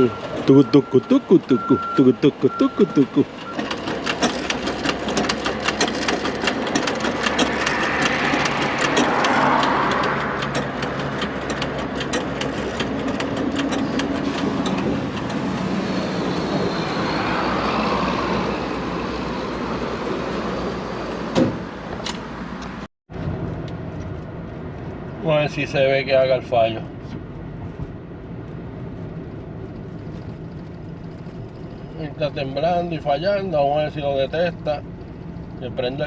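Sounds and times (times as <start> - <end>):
fuel pump running and ticking: 0.0 - 15.4
engine and traffic noise: 0.0 - 36.0.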